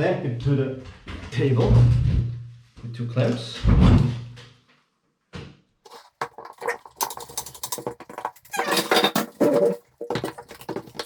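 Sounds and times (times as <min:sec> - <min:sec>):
clamps clicking and rattling: 0:05.9 - 0:11.0.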